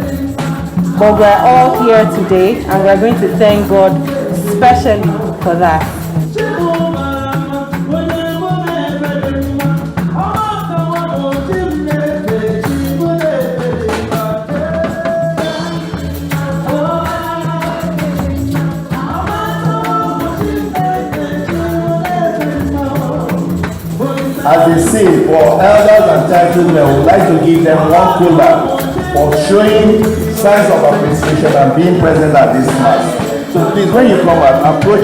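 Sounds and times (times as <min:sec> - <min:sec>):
low bass line: 0:00.0 - 0:07.3
rattling percussion beat: 0:00.0 - 0:35.0
voices singing gospel: 0:00.0 - 0:35.0.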